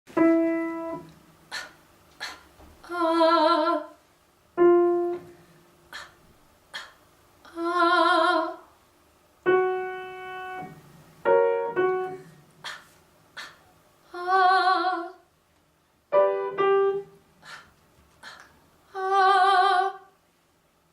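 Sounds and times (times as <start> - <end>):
piano notes: 0.1 - 1.2, 4.6 - 5.4, 9.5 - 12.4, 16.1 - 17.2.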